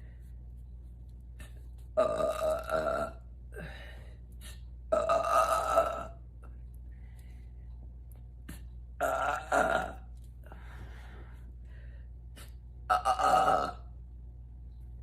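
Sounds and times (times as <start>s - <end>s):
woman belching: 2.0s - 3.2s, 4.9s - 6.2s, 9.0s - 10.1s, 12.9s - 13.9s.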